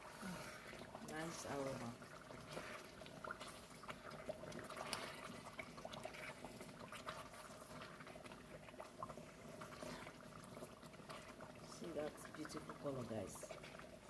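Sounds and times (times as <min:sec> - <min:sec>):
stew bubbling in a pot: 0:00.0 - 0:14.0.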